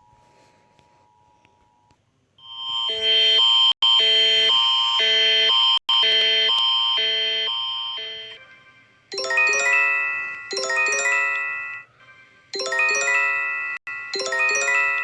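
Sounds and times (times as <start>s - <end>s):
steady high alert tone: 9.1s - 11.9s, 12.6s - 15.0s
bright chime notes: 9.2s - 11.8s, 12.6s - 15.0s.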